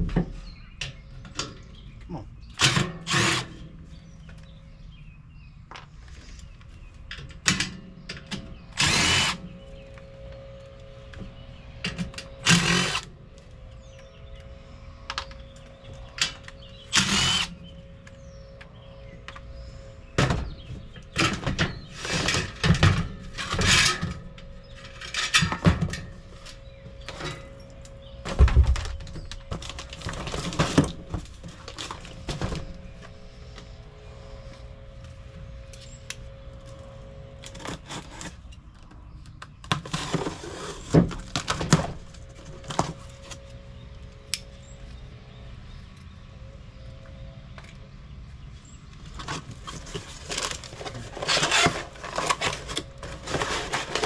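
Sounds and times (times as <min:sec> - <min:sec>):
power drill bursts: 0:02.6 - 0:03.5, 0:08.7 - 0:09.4, 0:12.4 - 0:13.1, 0:16.9 - 0:17.6.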